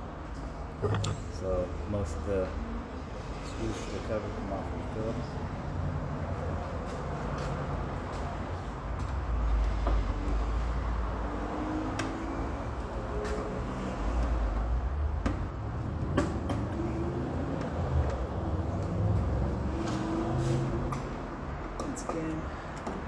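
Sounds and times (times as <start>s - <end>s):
hand tool clicks and taps: 12.0s - 12.3s, 16.2s - 16.8s.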